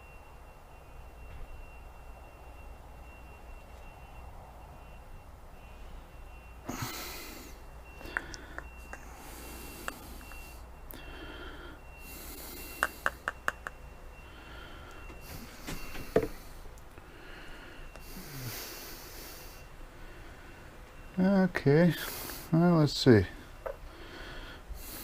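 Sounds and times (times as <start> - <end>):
man breathing heavily through nose: 5.8 - 13.2, 14.1 - 21.1, 21.9 - 22.6, 23.3 - 25.0.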